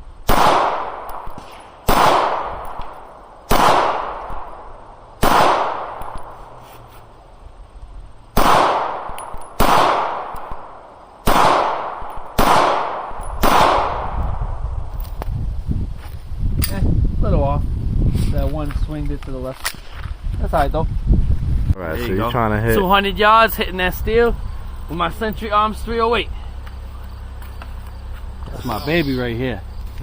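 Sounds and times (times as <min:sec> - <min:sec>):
pistol shots echoing: 0:00.2 - 0:06.3, 0:08.4 - 0:14.2.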